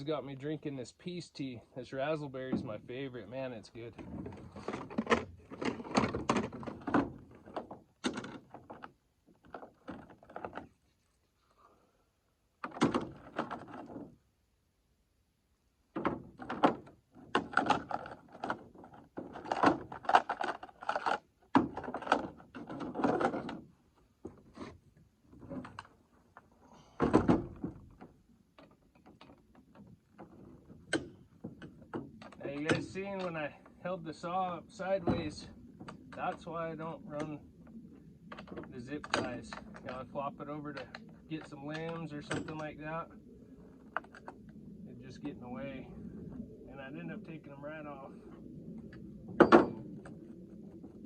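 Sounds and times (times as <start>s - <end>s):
metallic clicks and clanks: 38.3s - 40.0s, 40.7s - 42.8s.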